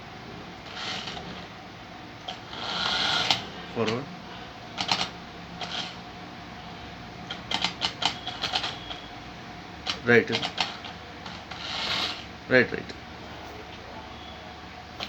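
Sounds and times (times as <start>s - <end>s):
robot motors clicking and rattling: 0.7s - 1.4s, 4.8s - 6.0s, 9.9s - 12.2s
person speaking: 9.9s - 10.7s.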